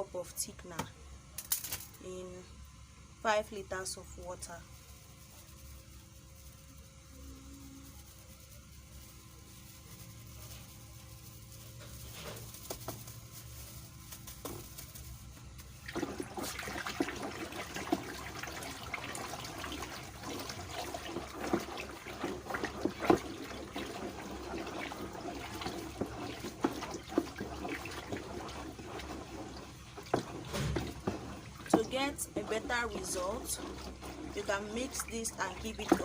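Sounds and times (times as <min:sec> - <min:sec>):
water sloshing and splashing: 0:15.7 - 0:36.0.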